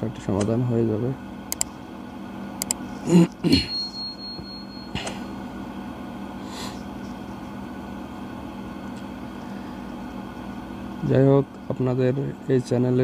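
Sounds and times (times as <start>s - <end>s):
low hum: 0.0s - 12.5s
hot-air gun blower whirring: 1.2s - 11.7s
thin high tone: 3.5s - 5.4s.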